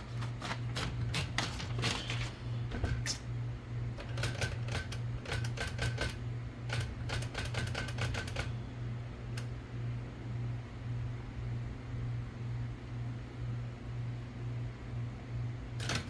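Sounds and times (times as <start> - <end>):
low steady hum: 0.0 - 16.0
typewriter keys clacking: 0.2 - 2.3, 4.0 - 8.5.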